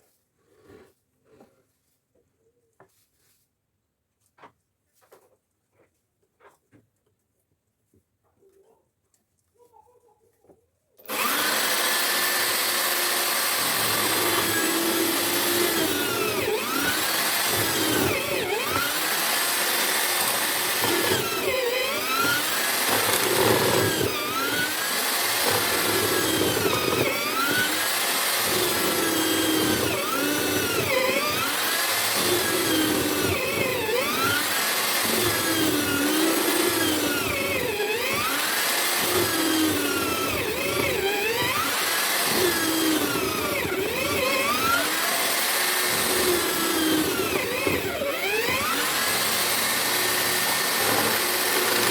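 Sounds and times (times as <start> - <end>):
drill motor boring into wood: 11.0 - 51.9.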